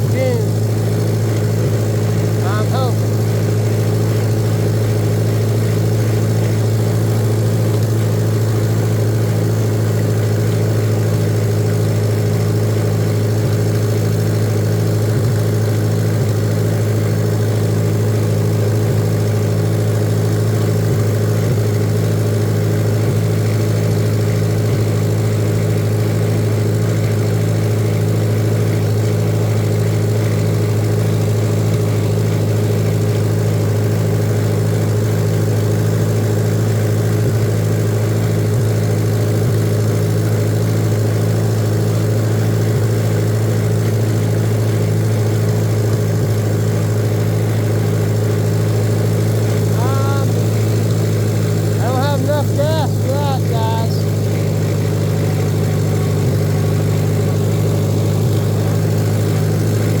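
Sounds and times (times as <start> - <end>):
tractor engine running: 0.0 - 60.0.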